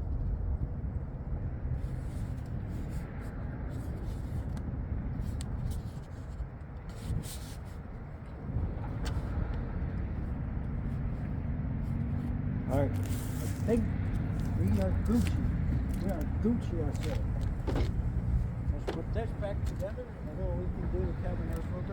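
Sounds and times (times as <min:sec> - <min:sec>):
wind rumbling on microphone: 0:00.0 - 0:21.9
light clicks and taps: 0:12.9 - 0:20.4.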